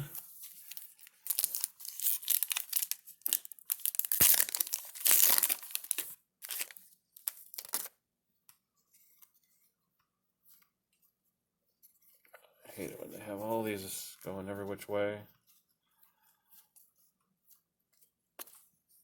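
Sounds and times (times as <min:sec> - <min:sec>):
foil wrapper and cards crinkling: 0:00.1 - 0:08.0.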